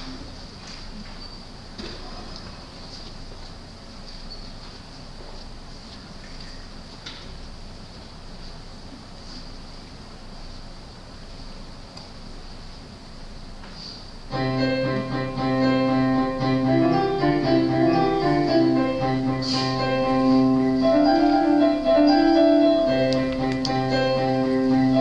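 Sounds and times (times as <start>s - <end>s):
keyboard music with held chords: 14.3s - 25.0s.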